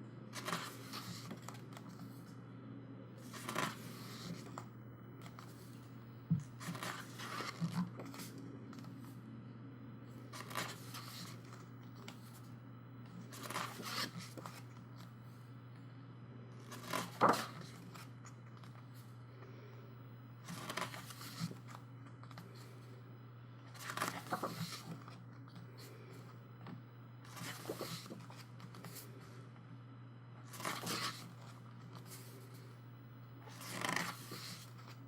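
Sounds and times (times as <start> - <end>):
steady low hum: 0.0 - 35.0
pages turning: 0.3 - 2.2, 3.2 - 5.9, 6.6 - 9.1, 10.3 - 12.5, 13.2 - 14.8, 16.6 - 18.8, 20.4 - 22.4, 23.7 - 25.9, 27.3 - 29.0, 30.5 - 32.3, 33.5 - 35.0
paper rustles: 0.3 - 2.2, 3.2 - 4.6, 6.6 - 9.1, 13.3 - 14.8, 16.7 - 18.8, 20.4 - 22.7, 23.7 - 25.9, 27.3 - 29.1, 30.5 - 32.6, 33.5 - 35.0.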